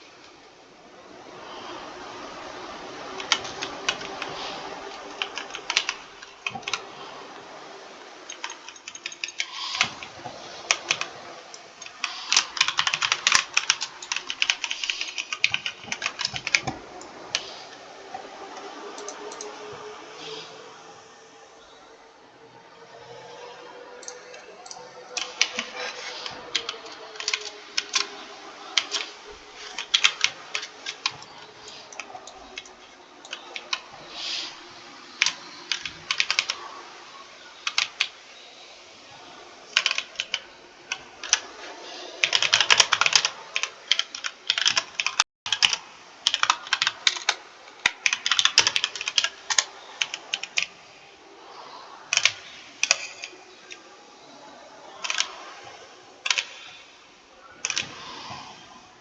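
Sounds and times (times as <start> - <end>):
keyboard typing clicks: 3.2 - 6.8, 8.3 - 11.2, 11.8 - 17.5, 24.0 - 33.8, 35.2 - 36.6, 37.7 - 38.1, 39.7 - 41.4, 42.2 - 50.7, 52.1 - 53.4, 55.0 - 55.4, 56.3 - 56.7, 57.6 - 58.0.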